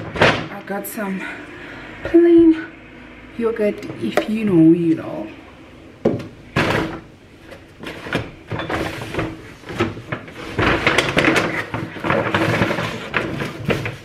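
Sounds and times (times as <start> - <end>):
clicks and knocks of items set down: 6.1 - 14.0
packaging rustling: 6.6 - 14.0.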